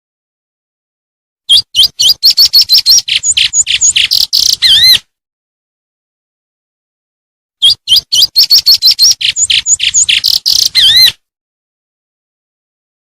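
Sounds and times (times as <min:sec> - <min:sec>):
songbird singing: 0:01.5 - 0:05.0, 0:07.6 - 0:11.2.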